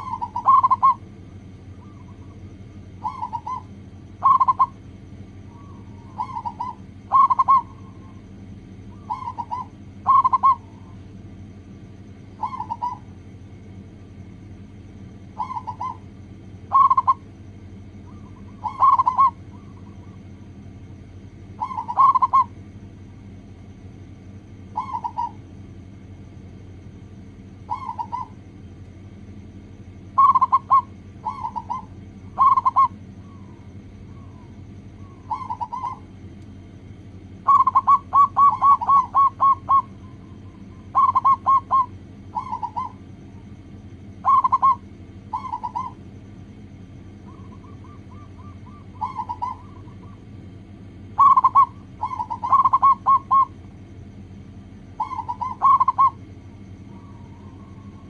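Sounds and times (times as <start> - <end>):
dove cooing: 0.0 - 11.2, 12.2 - 13.3, 15.2 - 17.3, 17.9 - 22.7, 24.5 - 25.5, 27.5 - 28.4, 30.0 - 36.2, 37.3 - 46.2, 47.1 - 53.8, 54.8 - 58.0
steady low hum: 0.0 - 58.0.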